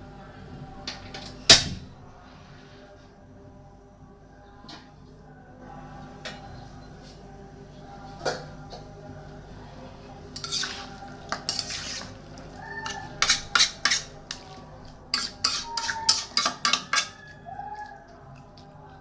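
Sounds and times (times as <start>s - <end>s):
metal utensil scraping a pot: 10.1s - 17.5s
utensil clinking on pot: 10.2s - 17.4s.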